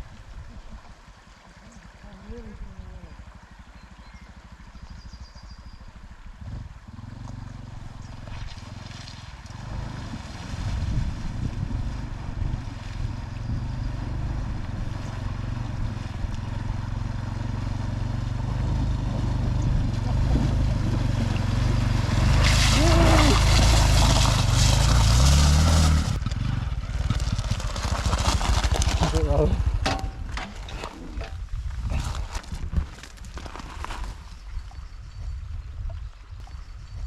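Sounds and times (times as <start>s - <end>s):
motorcycle engine running: 3.2s - 30.5s.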